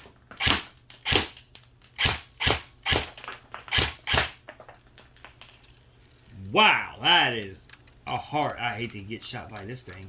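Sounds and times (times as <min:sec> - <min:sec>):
airsoft gun shots: 0:00.0 - 0:01.4, 0:02.0 - 0:04.4.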